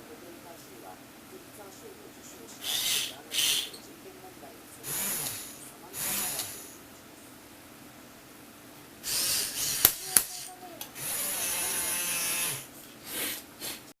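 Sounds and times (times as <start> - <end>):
small electric motor whirring: 2.6 - 3.7, 4.8 - 6.7, 9.0 - 12.7
sharp clicks: 9.1 - 11.2.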